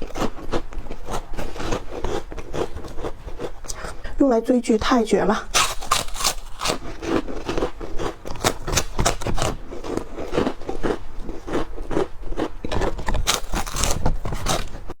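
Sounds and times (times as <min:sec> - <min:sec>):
crunching crisp chips: 0:05.5 - 0:14.9.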